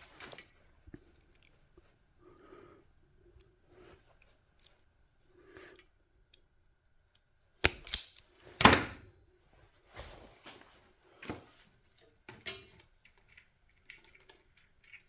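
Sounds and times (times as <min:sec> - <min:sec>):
faint handling noises: 0:00.0 - 0:02.4, 0:03.3 - 0:06.4, 0:09.3 - 0:15.0.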